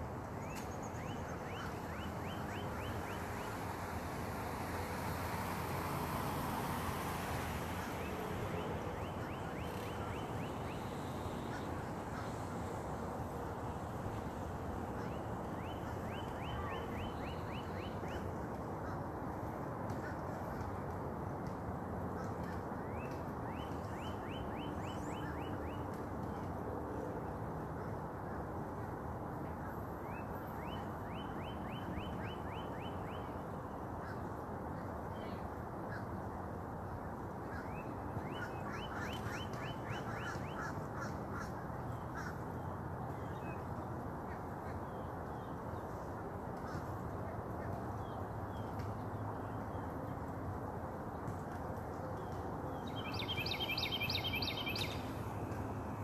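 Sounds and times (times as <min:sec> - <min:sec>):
steady rushing background noise: 0:39.5 - 0:56.0.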